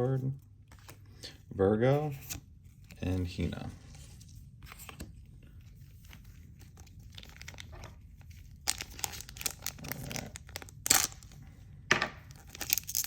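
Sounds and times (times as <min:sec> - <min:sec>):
foil wrapper crinkling and tearing: 0:06.6 - 0:07.8, 0:08.4 - 0:11.4, 0:12.3 - 0:13.0.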